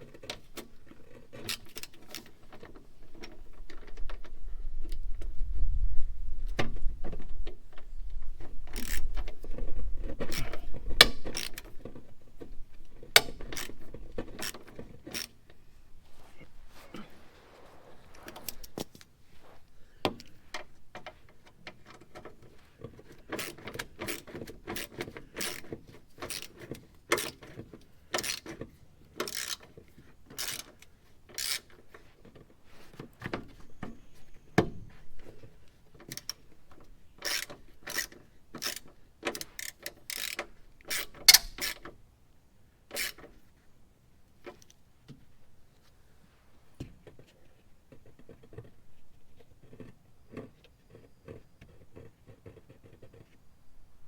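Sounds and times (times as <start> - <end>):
ratchet wrench clicking: 8.8 - 9.0, 11.0 - 11.6, 26.3 - 26.5, 28.1 - 28.5, 29.2 - 29.7, 30.4 - 30.7, 31.4 - 31.6, 37.2 - 41.8.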